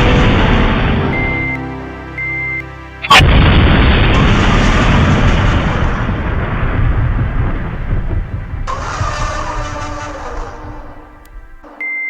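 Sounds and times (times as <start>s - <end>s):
rumbling explosion: 0.0s - 1.6s, 3.1s - 11.6s
steady high-pitched beep: 0.0s - 3.2s, 11.8s - 12.0s.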